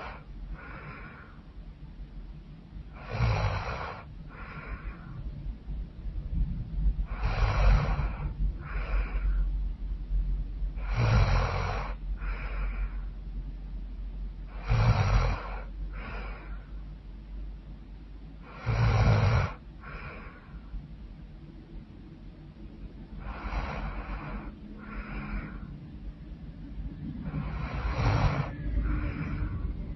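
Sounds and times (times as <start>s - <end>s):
soft breath out: 0.0s - 1.6s, 3.0s - 5.3s, 10.8s - 13.3s, 14.6s - 16.9s, 18.4s - 20.8s, 23.2s - 26.1s, 27.0s - 29.9s
woman snoring loudly: 3.0s - 4.6s, 7.1s - 8.9s, 10.8s - 12.0s, 14.6s - 16.2s, 18.5s - 20.2s, 23.2s - 25.6s, 27.3s - 29.6s.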